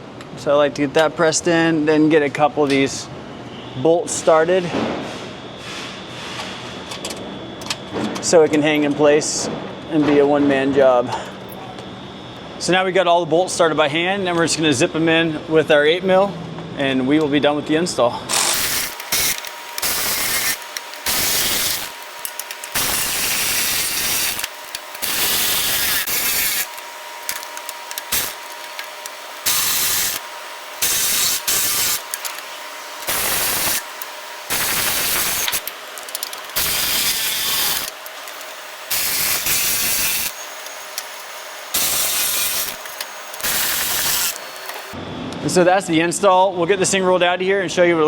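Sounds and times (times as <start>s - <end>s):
power tool driving bolts: 18.3s - 45.0s.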